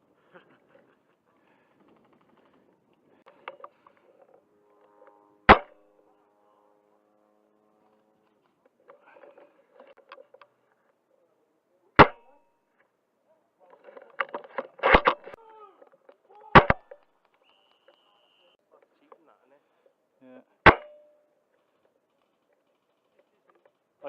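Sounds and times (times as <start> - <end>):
airsoft rifle shots: 5.5 - 5.8, 12.0 - 12.4, 14.8 - 15.4, 16.5 - 17.0, 20.7 - 21.1.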